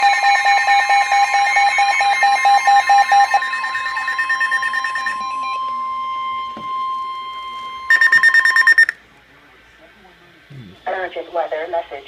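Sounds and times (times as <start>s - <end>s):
high steady tone: 0.0s - 9.0s
steady warning alarm tone: 0.0s - 9.0s
pulsing low beep: 2.2s - 9.0s.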